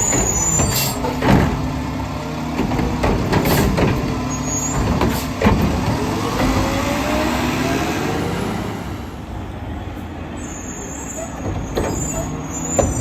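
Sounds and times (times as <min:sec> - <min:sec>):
heavy clunks: 0:00.0 - 0:07.1, 0:11.3 - 0:13.0
garbage truck engine revving: 0:00.0 - 0:09.3.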